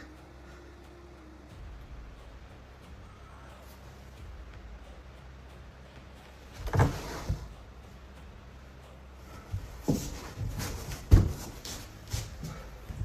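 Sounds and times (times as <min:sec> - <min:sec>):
steady low hum: 0:00.0 - 0:13.0
dull thumps and knocks: 0:09.5 - 0:11.8.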